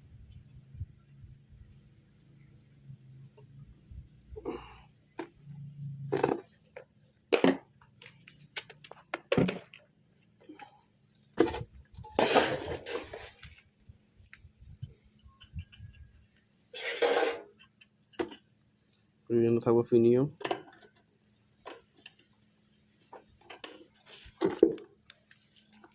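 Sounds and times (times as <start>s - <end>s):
scraping rattle: 16.7s - 17.6s.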